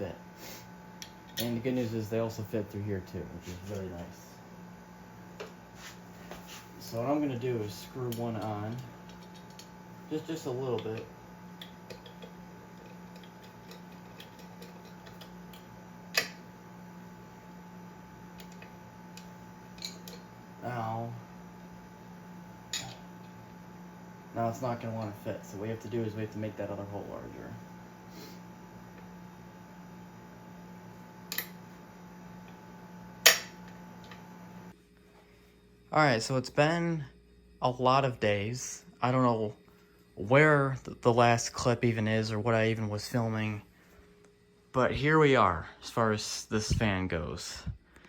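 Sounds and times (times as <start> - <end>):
steady low hum: 0.0 - 48.0.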